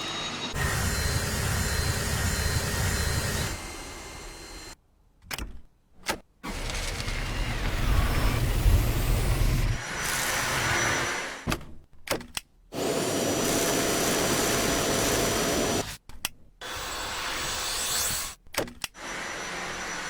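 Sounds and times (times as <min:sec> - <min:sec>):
vacuum cleaner motors running: 0:00.5 - 0:04.8, 0:06.5 - 0:11.4, 0:12.8 - 0:15.9, 0:19.0 - 0:20.0.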